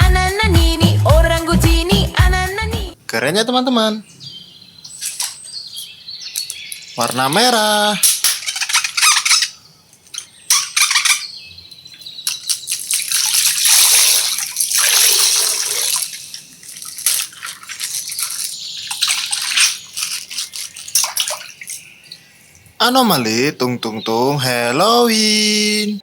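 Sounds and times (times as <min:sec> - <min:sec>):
plastic crinkling: 0:11.8 - 0:22.1
water gushing and splashing: 0:12.3 - 0:22.8.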